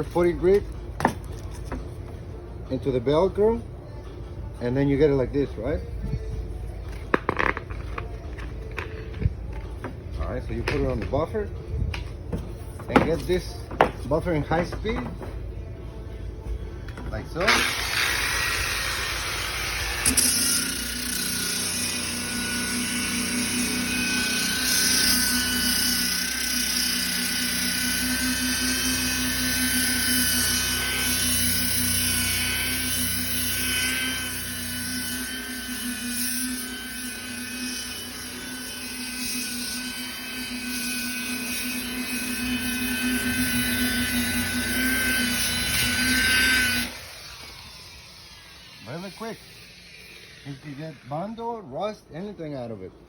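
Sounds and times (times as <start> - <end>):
sandpaper hissing on metal: 45.6 - 51.4.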